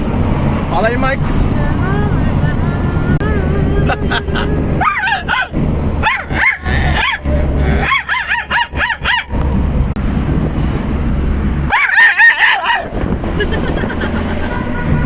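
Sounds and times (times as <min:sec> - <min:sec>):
dog barking: 0:04.8 - 0:09.3, 0:11.7 - 0:12.9.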